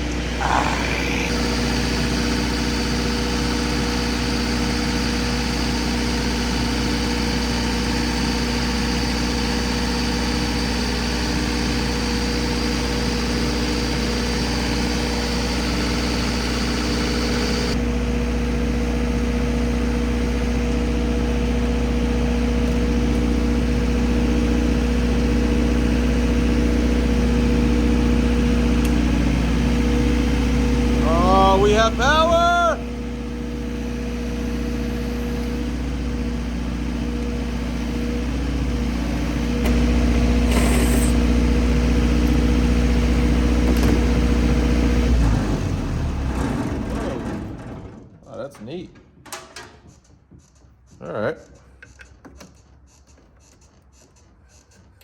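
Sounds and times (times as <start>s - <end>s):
high whine: 0.0s - 1.7s
diesel generator engine running: 0.0s - 48.8s.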